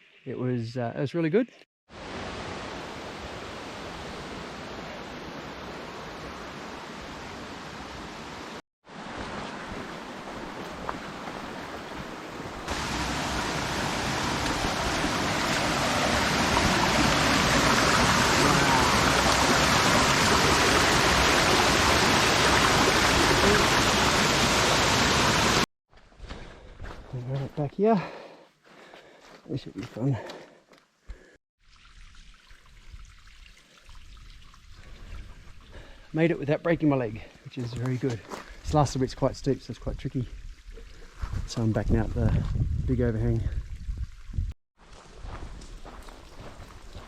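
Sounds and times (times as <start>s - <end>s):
rushing water: 1.9s - 25.7s.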